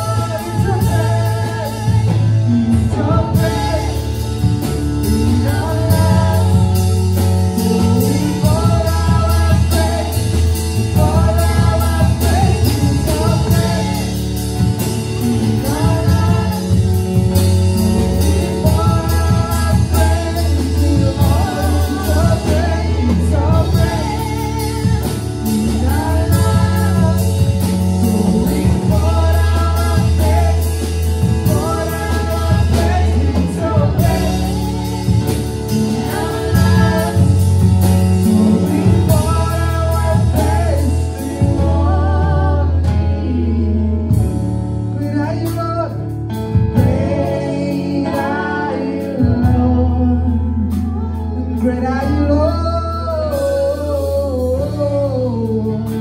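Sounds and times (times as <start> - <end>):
person singing: 0.0 - 44.4
strong bass line: 0.0 - 56.0
worship band playing: 0.0 - 56.0.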